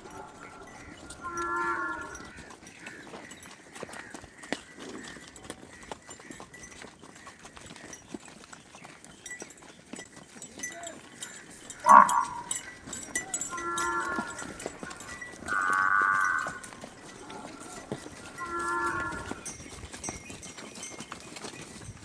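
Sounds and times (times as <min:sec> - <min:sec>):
water buffalo lowing: 0:00.0 - 0:02.5, 0:11.3 - 0:19.6.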